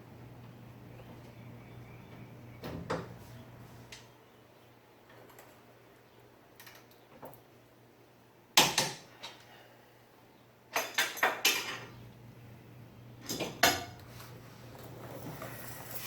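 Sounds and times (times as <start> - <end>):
steady low hum: 11.9 - 16.0.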